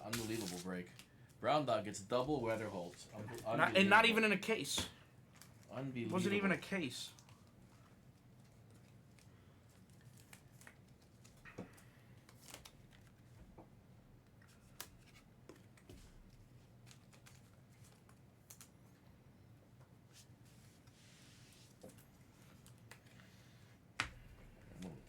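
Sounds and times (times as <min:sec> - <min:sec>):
trading cards clicking and rustling: 0:00.0 - 0:01.1, 0:14.5 - 0:18.8
low room hum: 0:00.0 - 0:25.0.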